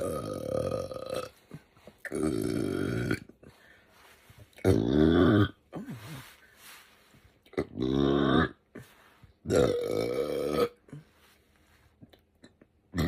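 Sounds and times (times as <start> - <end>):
woman burping loudly: 0.0 - 3.4, 9.5 - 11.0.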